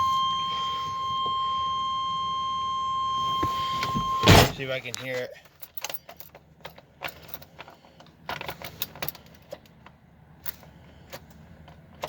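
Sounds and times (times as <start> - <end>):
keys jangling clicks and rattles: 5.4 - 9.7.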